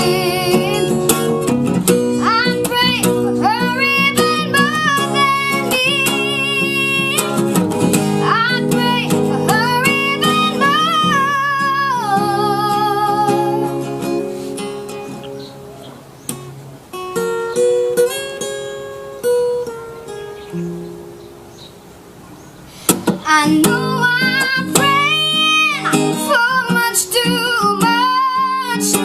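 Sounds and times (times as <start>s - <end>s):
child singing a slow ballad: 0.0s - 1.4s, 2.2s - 7.4s, 8.2s - 13.8s, 23.2s - 29.0s
acoustic guitar: 0.0s - 29.0s.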